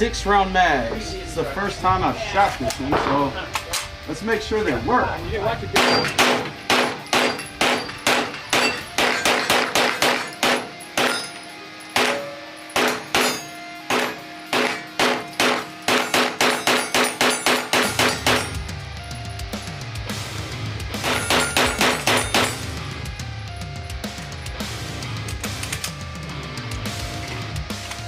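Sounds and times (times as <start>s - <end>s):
semi-automatic gunshots ringing: 5.8s - 11.2s, 12.8s - 18.5s.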